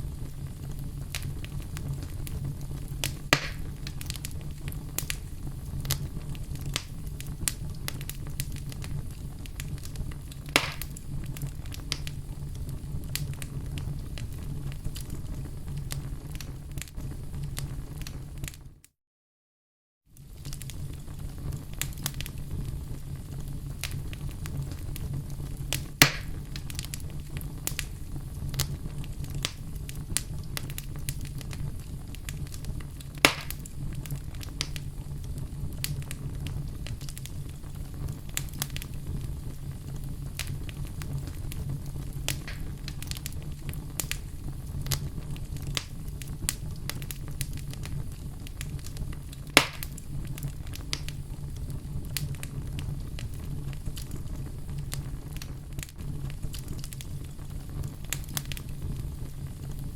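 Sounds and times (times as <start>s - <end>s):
fire crackling: 0.0s - 18.8s, 20.1s - 59.9s
low rumble of flames: 0.0s - 18.9s, 20.1s - 59.9s
loud sharp pops: 3.0s - 4.0s, 10.5s - 11.0s, 25.8s - 26.4s, 33.2s - 33.7s, 42.3s - 42.8s, 49.6s - 50.0s.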